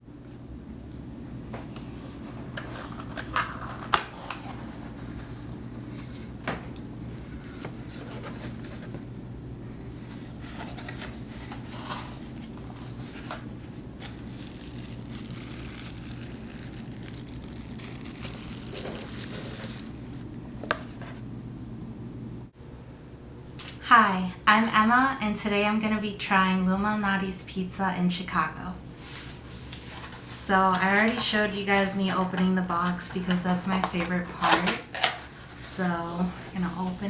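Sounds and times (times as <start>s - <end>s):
steady low hum: 0.0s - 37.0s
cardboard box rustling and crinkling: 1.6s - 9.1s, 10.0s - 21.2s.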